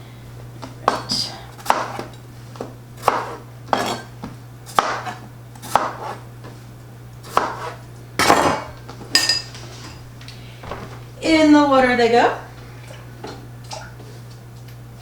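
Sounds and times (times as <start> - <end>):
knife chopping on cutting board: 0.8 - 4.1, 4.7 - 6.2, 7.2 - 8.6
knife scraping on board: 3.0 - 4.1, 5.0 - 6.2, 7.3 - 7.8.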